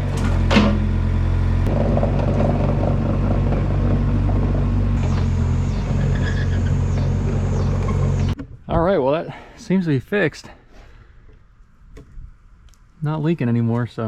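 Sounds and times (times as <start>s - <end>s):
machine engine running: 0.0s - 8.4s.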